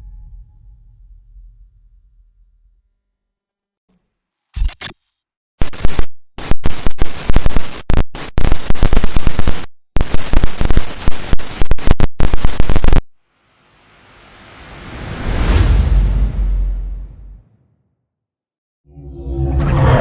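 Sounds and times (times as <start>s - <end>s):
sharp cracks and pops: 3.9s - 13.0s.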